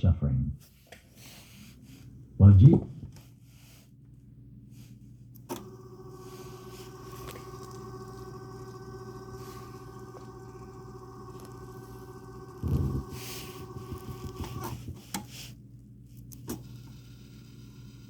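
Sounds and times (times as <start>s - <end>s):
tape deck motor humming: 5.4s - 15.3s, 16.3s - 18.0s.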